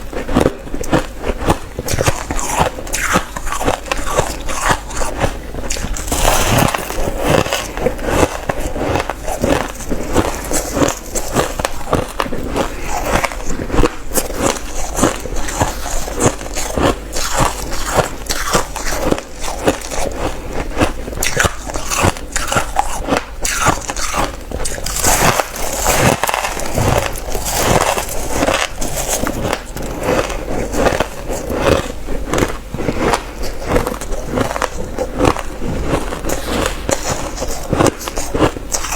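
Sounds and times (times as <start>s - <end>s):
crushed ice crunching: 1.9s - 20.4s, 21.2s - 38.9s.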